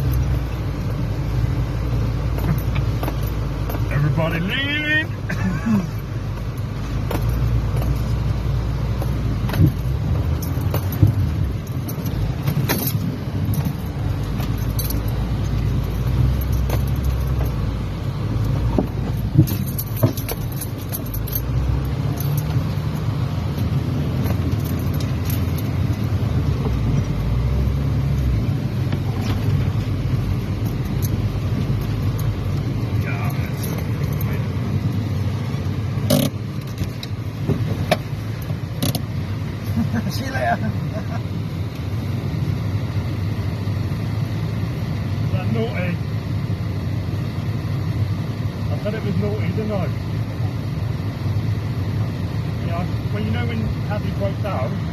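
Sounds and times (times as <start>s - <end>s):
vehicle body rattling: 0.0s - 39.2s
low engine rumble: 0.0s - 54.9s.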